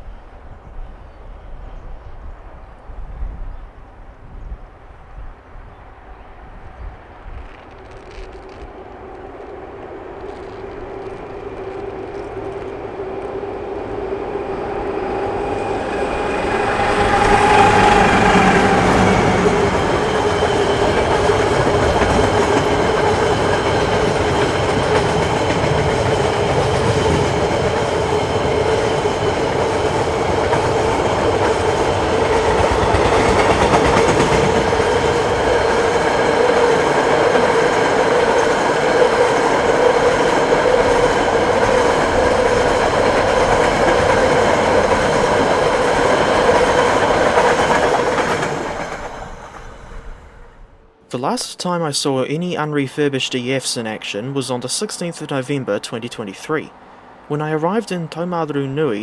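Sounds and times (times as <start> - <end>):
train rumbling past: 0.0 - 51.1, 53.0 - 59.0
electric locomotive hum: 5.8 - 51.1.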